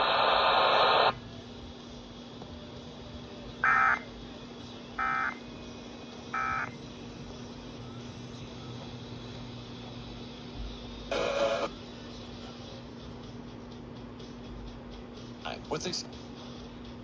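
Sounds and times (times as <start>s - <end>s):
loud radio hiss: 0.0s - 1.4s, 10.9s - 11.9s, 15.4s - 16.4s.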